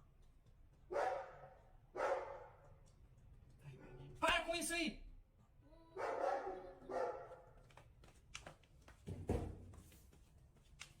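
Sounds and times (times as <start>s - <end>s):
dog barking: 0.9s - 2.6s, 6.0s - 7.4s.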